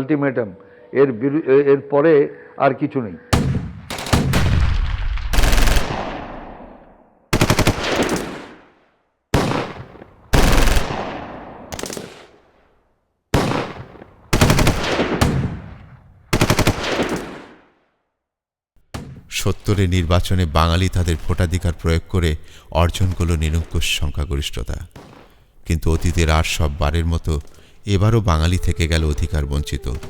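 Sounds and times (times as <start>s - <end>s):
machine-gun bursts echoing: 3.4s - 6.7s, 7.3s - 8.8s, 9.4s - 12.4s, 13.4s - 17.6s.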